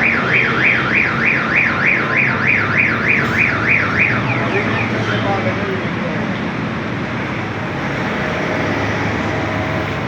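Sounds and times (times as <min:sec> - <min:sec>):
warbling electronic alarm: 0:00.0 - 0:05.0.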